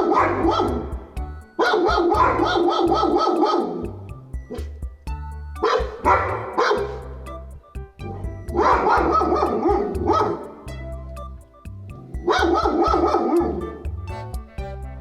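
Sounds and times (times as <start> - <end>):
dog barking rapidly: 0.0 - 1.0, 1.6 - 3.8, 5.6 - 7.1, 8.6 - 10.4, 12.3 - 13.5
background music with beat: 0.0 - 15.0.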